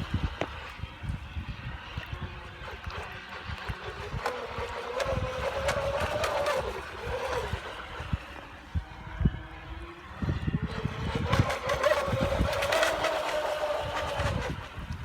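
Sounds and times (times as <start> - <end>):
model boat motor whine: 0.0 - 15.0
wind buffeting microphone: 0.0 - 15.0.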